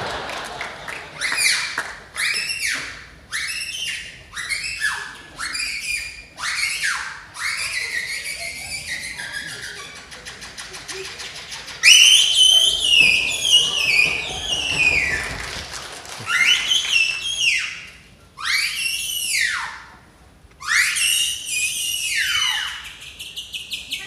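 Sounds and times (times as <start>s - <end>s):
whistling sliding down in pitch: 11.8s - 19.7s.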